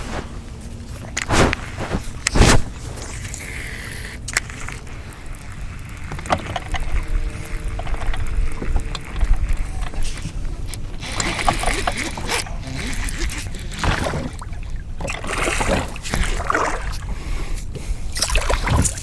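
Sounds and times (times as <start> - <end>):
water noise around boat: 0.0 - 19.0
wind: 0.0 - 19.0
low rumble: 4.4 - 11.7.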